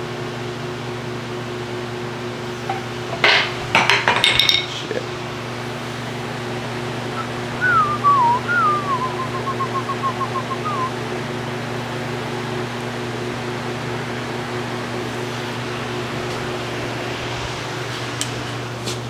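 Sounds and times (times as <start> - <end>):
steady hum: 4.9 - 19.0
person whistling: 7.2 - 11.0.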